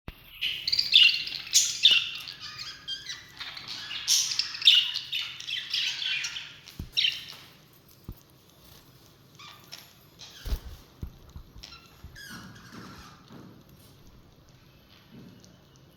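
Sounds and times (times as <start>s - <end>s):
birds chirping: 0.2s - 7.6s.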